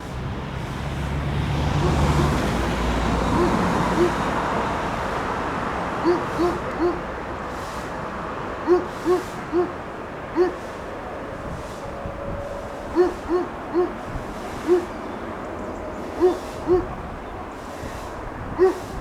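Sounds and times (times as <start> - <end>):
bird calls: 3.2 - 4.3, 6.0 - 7.1, 8.6 - 10.7, 11.8 - 19.0.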